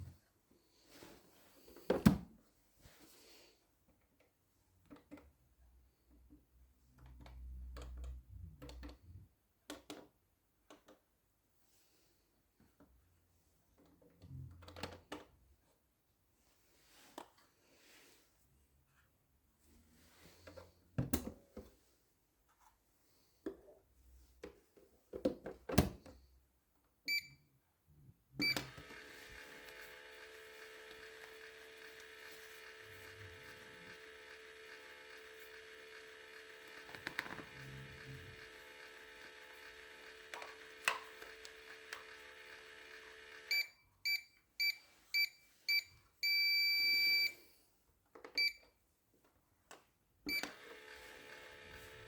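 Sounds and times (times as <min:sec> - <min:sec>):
short electronic beeps: 0:43.5 - 0:47.3.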